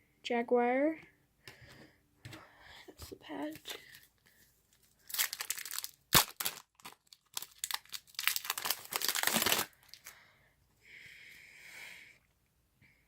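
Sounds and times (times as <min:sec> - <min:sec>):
foil wrapper crinkling and tearing: 0:04.7 - 0:10.1.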